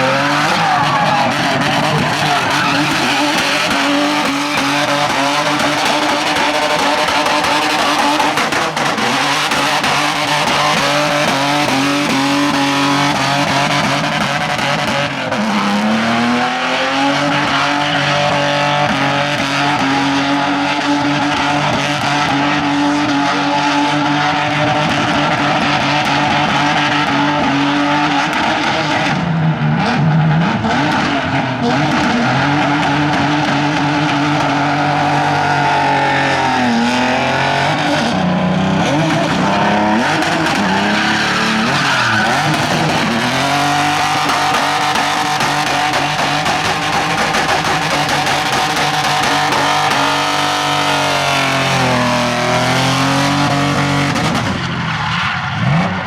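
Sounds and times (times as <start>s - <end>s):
tyres squealing in a skid: 0.0s - 15.9s, 29.8s - 56.0s
car engine at high revs: 0.0s - 56.0s.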